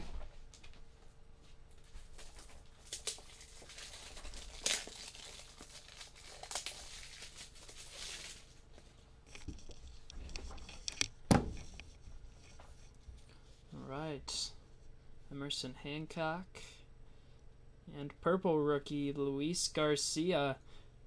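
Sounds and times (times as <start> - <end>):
plastic crinkling and rustling: 0.0 - 13.3.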